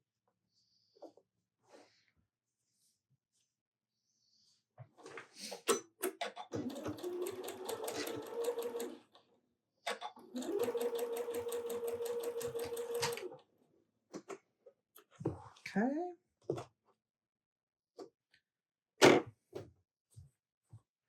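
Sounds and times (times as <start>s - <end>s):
sewing machine stitching: 6.5s - 9.1s, 10.2s - 13.4s.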